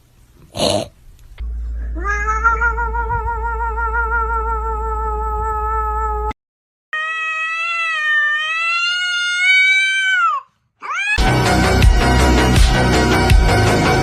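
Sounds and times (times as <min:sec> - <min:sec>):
held wavering call: 0:01.4 - 0:05.1
cat meowing: 0:02.0 - 0:06.4, 0:07.0 - 0:11.2
loud music: 0:11.2 - 0:14.0.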